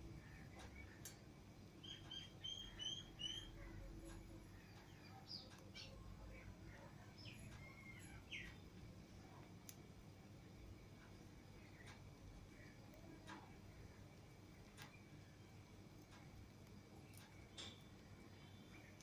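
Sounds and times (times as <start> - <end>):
lovebirds chirping: 0.0 - 19.0.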